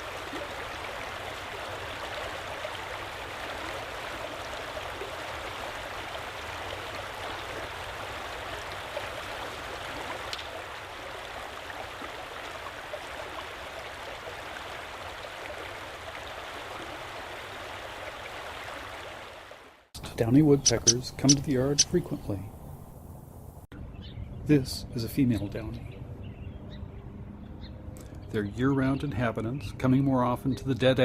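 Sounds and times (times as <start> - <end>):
creek water rushing: 0.0 - 23.2.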